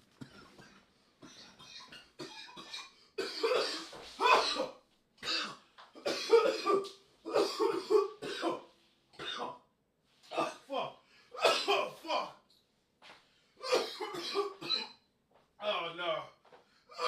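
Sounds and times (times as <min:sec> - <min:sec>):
man coughing harshly: 0:00.2 - 0:09.6, 0:10.3 - 0:12.4, 0:13.6 - 0:15.0.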